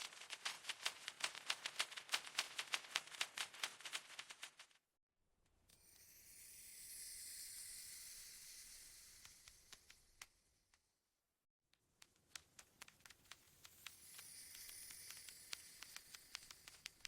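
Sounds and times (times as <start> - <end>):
soft hiss: 12.6 - 17.0.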